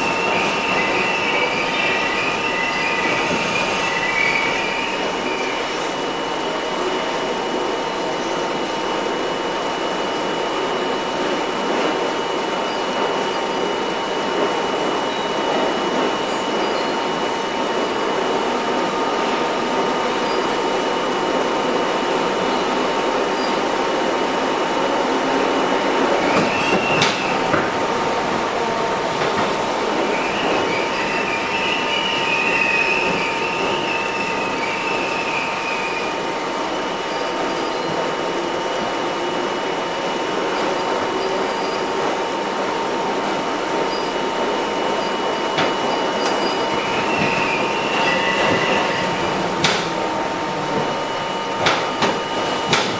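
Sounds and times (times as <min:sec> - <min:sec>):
subway wheels rumbling on rail: 0:00.0 - 0:52.9
wheels squealing: 0:28.5 - 0:36.3, 0:44.9 - 0:50.1.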